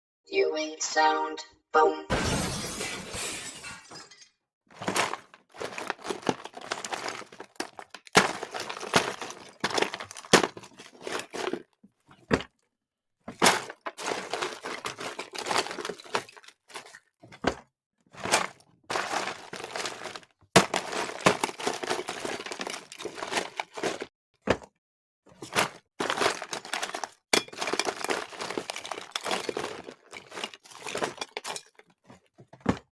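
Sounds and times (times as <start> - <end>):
small objects clattering in drawer: 4.8 - 12.5, 13.3 - 17.6, 18.2 - 24.1, 25.4 - 32.9.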